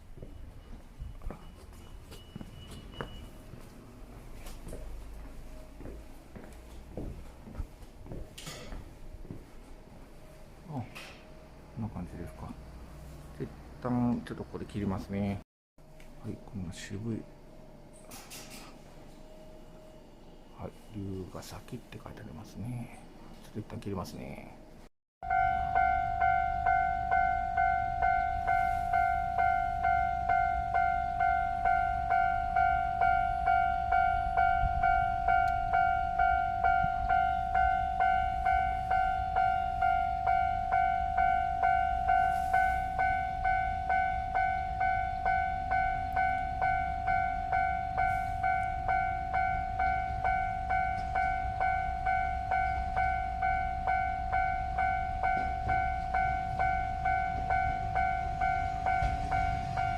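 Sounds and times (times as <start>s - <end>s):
level crossing warning bell ringing: 25.2s - 59.9s.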